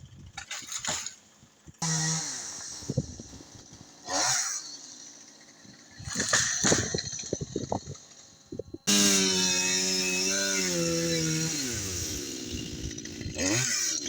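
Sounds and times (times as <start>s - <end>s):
chainsaw cutting wood: 0.3s - 14.0s.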